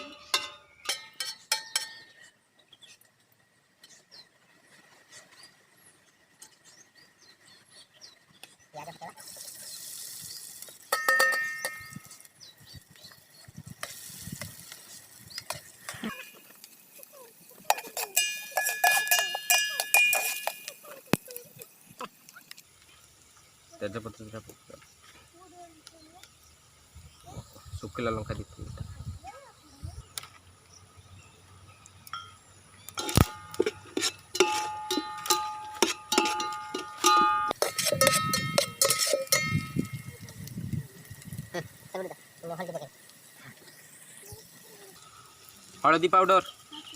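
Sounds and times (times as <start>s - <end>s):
knocks and clinks: 0.0s - 2.3s, 10.9s - 12.2s, 17.6s - 20.8s, 32.1s - 40.2s
spoon scraping frying pan: 0.0s - 2.3s, 17.5s - 21.3s, 32.9s - 40.3s
chillies frying in oil: 0.0s - 46.9s
ringing metal clang: 10.9s - 12.0s, 17.8s - 20.7s, 32.1s - 40.2s.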